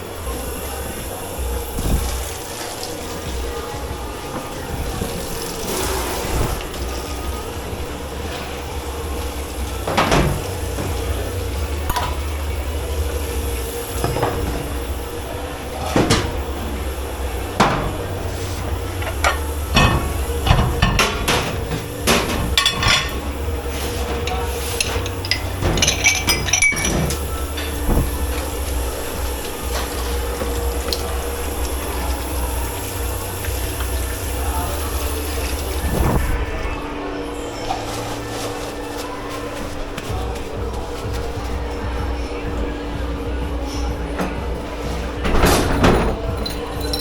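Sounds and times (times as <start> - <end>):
low machine hum: 0.0 - 47.0
dishes and cutlery clinking: 17.6 - 31.6, 45.2 - 47.0.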